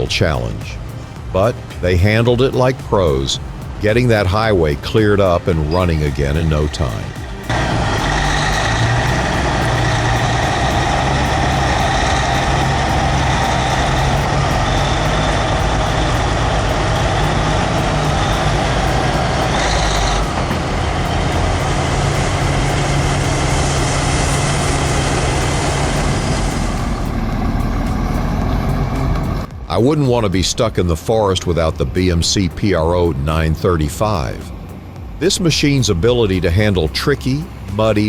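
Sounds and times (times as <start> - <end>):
high hiss: 0.0 - 29.5
truck diesel engines running: 0.0 - 38.0.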